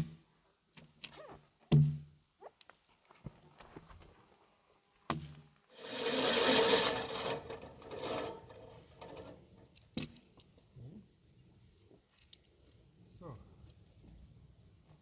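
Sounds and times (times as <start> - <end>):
wood scraping against wood: 5.8 - 9.4.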